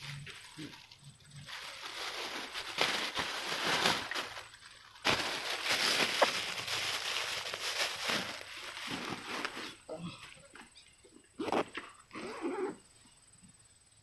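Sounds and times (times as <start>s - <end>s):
rustling crackling noise: 0.0s - 9.9s.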